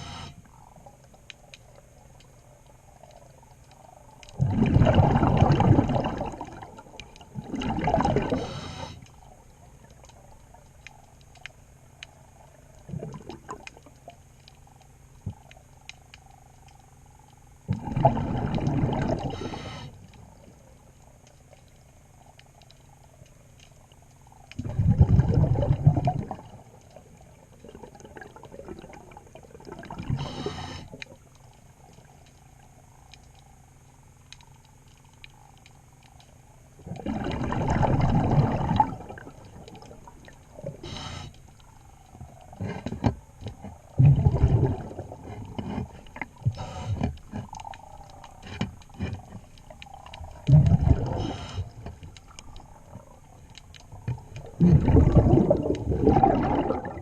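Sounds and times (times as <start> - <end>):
faint clicks: 0.4 - 4.4, 8.8 - 17.7, 19.3 - 24.7, 29.6 - 37.1, 44.8 - 55.0
diver exhaling bubbles underwater: 3.8 - 9.0, 12.8 - 13.8, 17.7 - 19.9, 24.6 - 30.9, 36.8 - 41.3, 42.4 - 48.0, 49.2 - 53.3, 53.9 - 57.0.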